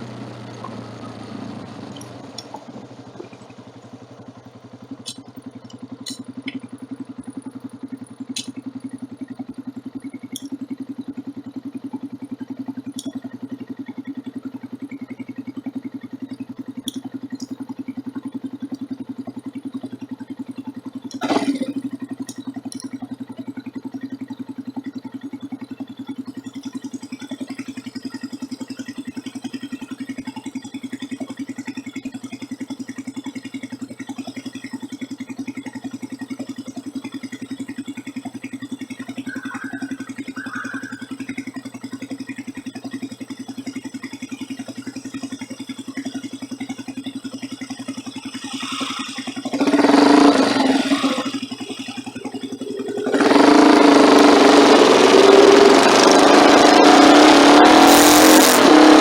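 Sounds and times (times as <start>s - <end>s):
motorcycle engine running: 0.0s - 59.0s
sharp clicks and rattles: 0.1s - 9.4s, 47.1s - 59.0s.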